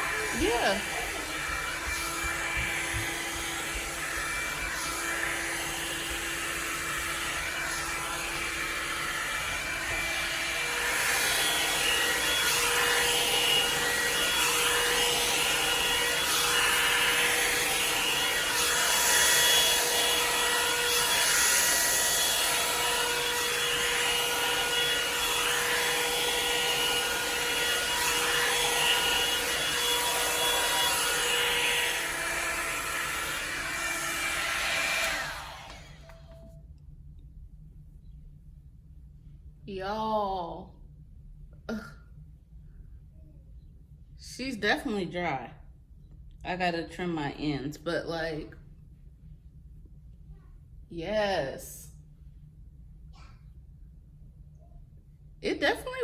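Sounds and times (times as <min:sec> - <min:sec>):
hair dryer brush whining: 0:00.0 - 0:36.6.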